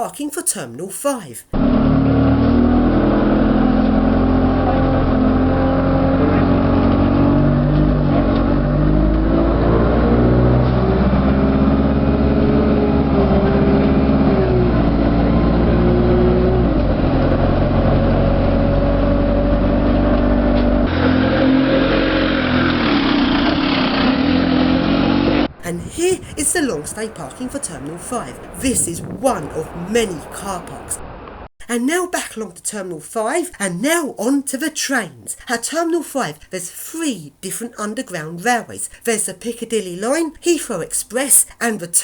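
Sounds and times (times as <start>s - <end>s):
bus engine changing gears: 1.6s - 29.8s.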